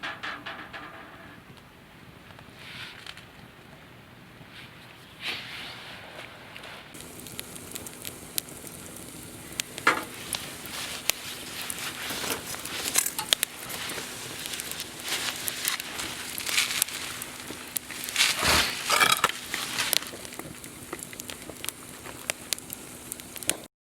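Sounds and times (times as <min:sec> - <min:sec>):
campfire crackling and popping: 0:07.0 - 0:23.7.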